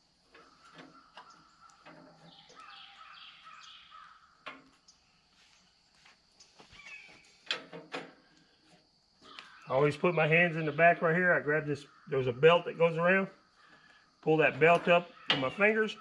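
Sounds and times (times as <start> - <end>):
crows cawing: 0.5 - 4.5, 9.3 - 9.7, 11.8 - 12.2.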